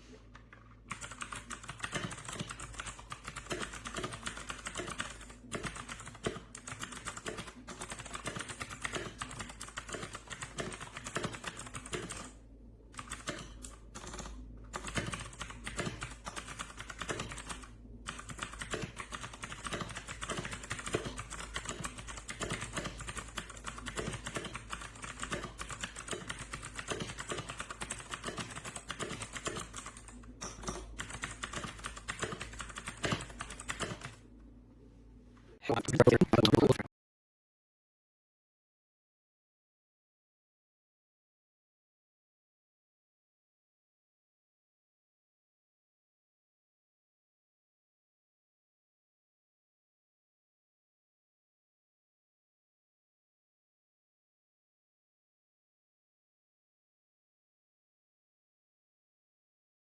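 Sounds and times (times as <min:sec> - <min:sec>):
fast typing on mechanical keyboard: 0:00.5 - 0:12.4, 0:13.0 - 0:34.2.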